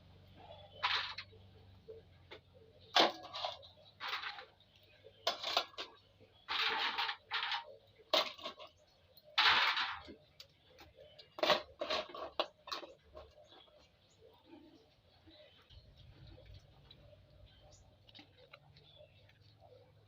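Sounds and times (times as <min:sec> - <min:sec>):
crab shell crunching and chewing: 0:16.2 - 0:19.8.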